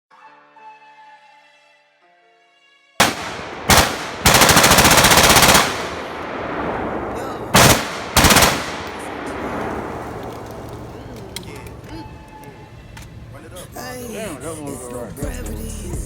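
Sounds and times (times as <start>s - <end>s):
rapid rifle gunfire: 3.0s - 10.2s.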